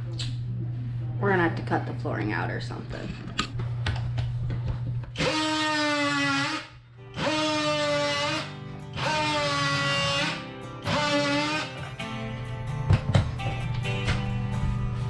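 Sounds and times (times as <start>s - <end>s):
music with long held notes: 7.0s - 15.0s.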